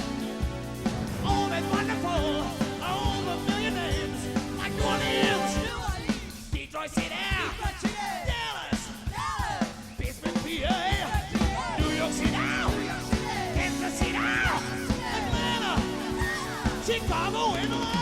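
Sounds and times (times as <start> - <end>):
soul band playing: 0.0 - 6.5, 10.4 - 18.0.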